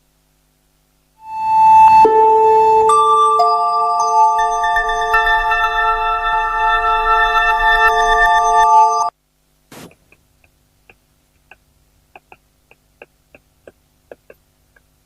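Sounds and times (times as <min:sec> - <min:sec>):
bell-like chiming music: 0:01.2 - 0:09.1.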